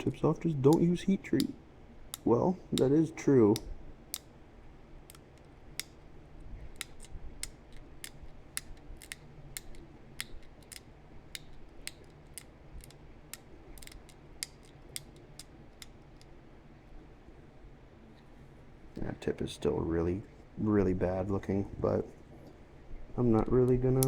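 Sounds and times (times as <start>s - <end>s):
stone flaking clicks: 6.7s - 16.4s.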